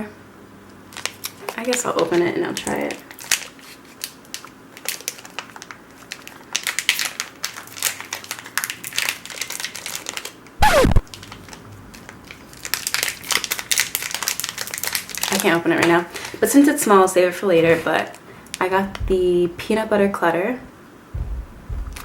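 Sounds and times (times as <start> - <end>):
plastic wrapper crinkling: 0.9 - 16.4
short loud falling-pitch sound: 10.6 - 11.0.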